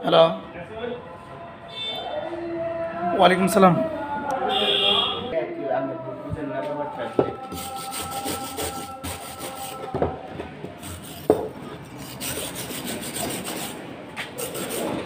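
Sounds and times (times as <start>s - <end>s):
abrasive scraping on metal part: 10.8s - 15.0s.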